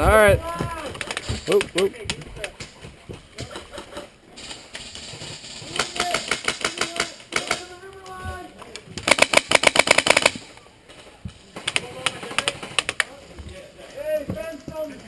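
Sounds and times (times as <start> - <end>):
airsoft gun bursts: 9.0 - 10.6.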